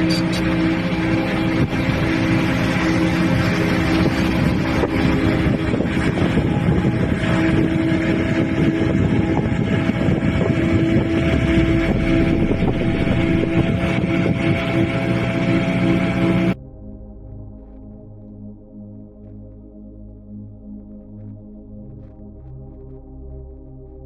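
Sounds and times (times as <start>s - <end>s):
engine running steadily: 0.0s - 16.6s
wind noise on microphone: 0.0s - 16.6s.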